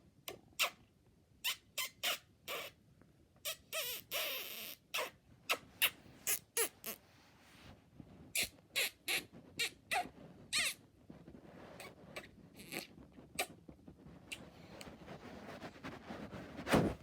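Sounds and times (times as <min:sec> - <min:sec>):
person making squeaky kissing sounds: 0:00.3 - 0:00.8, 0:01.4 - 0:02.8, 0:03.4 - 0:07.0, 0:08.3 - 0:10.8, 0:11.8 - 0:13.6.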